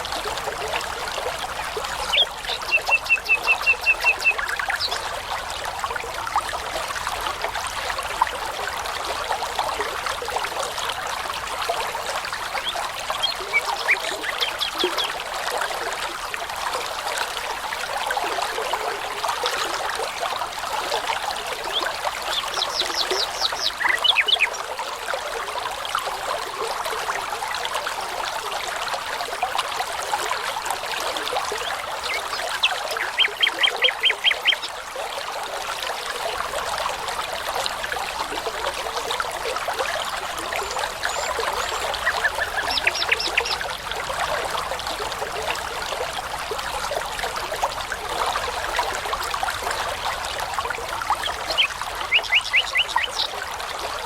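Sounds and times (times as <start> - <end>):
brook running over stones: 0.0 - 54.0
songbirds singing: 1.8 - 5.1, 12.5 - 15.2, 21.7 - 24.7, 31.6 - 34.8, 40.6 - 43.7, 51.2 - 53.4.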